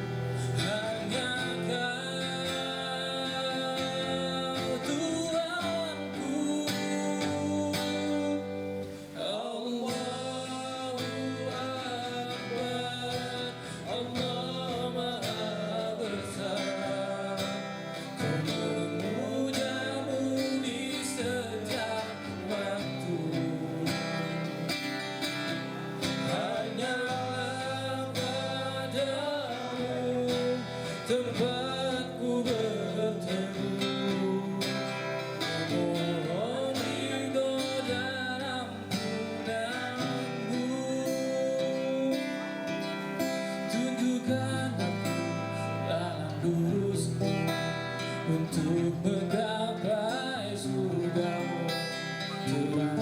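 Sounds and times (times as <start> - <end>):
slow song with acoustic guitar: 0.0 - 53.0.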